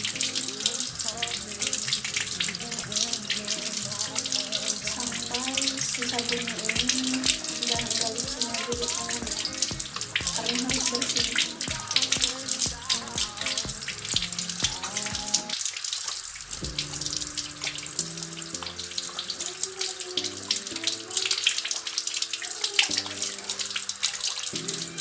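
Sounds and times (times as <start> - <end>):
soft melody: 0.0 - 15.6, 16.6 - 25.0
tap water splashing over hands: 0.0 - 17.6.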